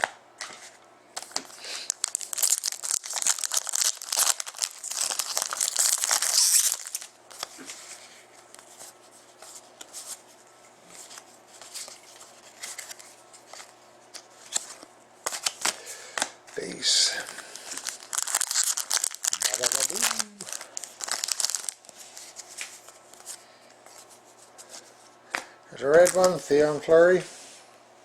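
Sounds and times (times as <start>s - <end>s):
cards rustling and clicking: 0.4s - 10.2s, 10.9s - 16.4s, 17.1s - 26.5s
wrapper tearing and crinkling: 1.8s - 7.5s, 17.3s - 22.0s, 26.0s - 26.4s.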